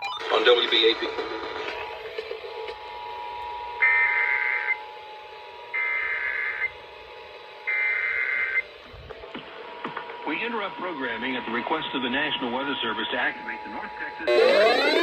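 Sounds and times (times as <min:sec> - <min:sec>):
faint steady tones: 0:00.0 - 0:08.9, 0:10.2 - 0:15.0
digital data tone bursts: 0:07.7 - 0:08.6, 0:12.9 - 0:15.0.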